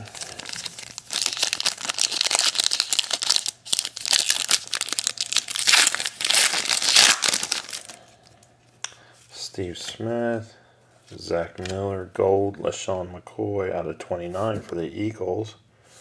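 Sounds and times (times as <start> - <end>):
wrapper crinkling and tearing: 0.0 - 8.0.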